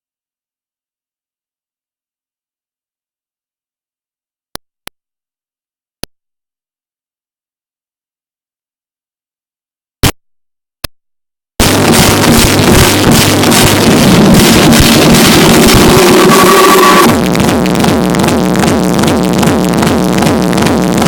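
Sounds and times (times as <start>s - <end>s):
loud techno music: 11.6s - 21.0s.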